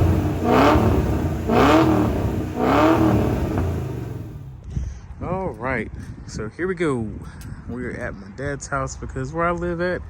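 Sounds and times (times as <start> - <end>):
car engine revving: 0.0 - 4.5.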